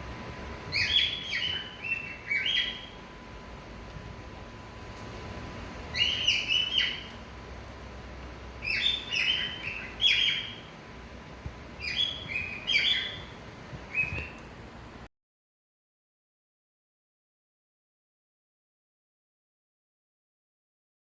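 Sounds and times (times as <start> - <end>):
cockatiel whistled chirps: 0.7 - 3.0, 5.9 - 7.2, 8.6 - 10.6, 11.8 - 13.3, 13.9 - 14.4.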